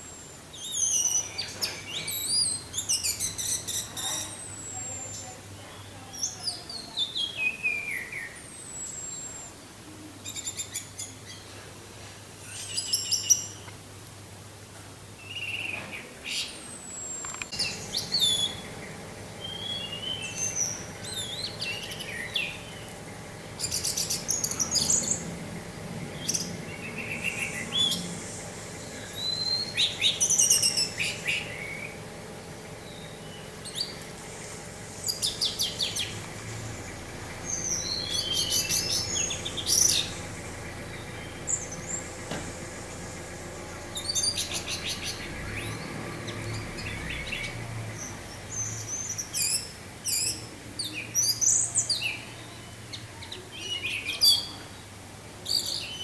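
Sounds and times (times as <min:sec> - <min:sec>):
faint steady hum: 0:16.0 - 0:56.0
thrush singing: 0:17.1 - 0:52.7.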